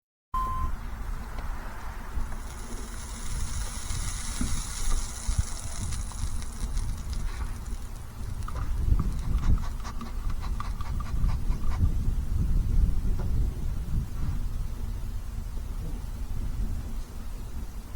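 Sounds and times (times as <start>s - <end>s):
wind rumbling on microphone: 0.4s - 17.9s
steady high hiss: 2.1s - 8.6s
quick crackles: 2.3s - 10.0s.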